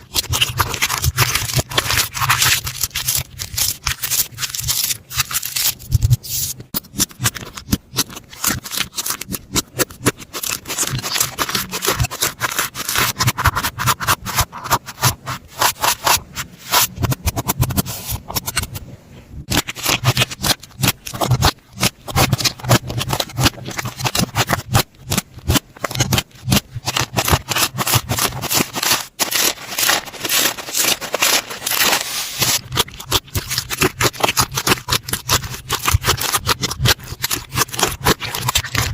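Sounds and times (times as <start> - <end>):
slime crackling and popping: 19.5 - 38.9.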